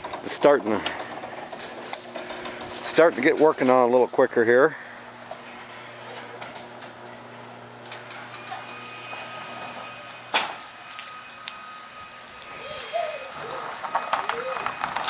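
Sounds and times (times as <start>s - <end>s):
electrical hum: 0.0s - 15.0s
faint high whine: 7.2s - 15.0s.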